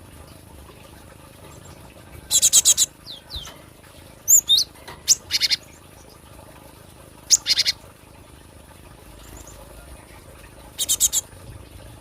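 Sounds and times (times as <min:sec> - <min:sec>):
bird calling sharp repeated notes: 0:04.3 - 0:05.6, 0:07.3 - 0:07.8, 0:10.8 - 0:11.2.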